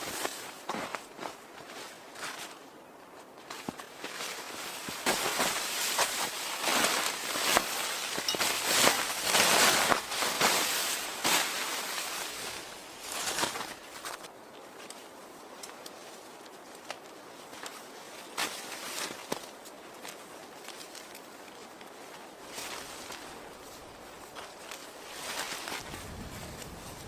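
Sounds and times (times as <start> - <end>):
footsteps crunching in snow: 3.6 - 14.3, 22.4 - 27.0.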